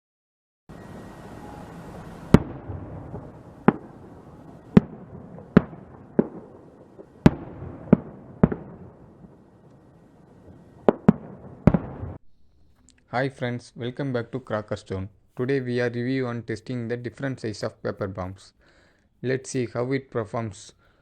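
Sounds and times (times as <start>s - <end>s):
firecracker bangs: 0.7s - 12.2s
low background noise: 0.7s - 21.0s.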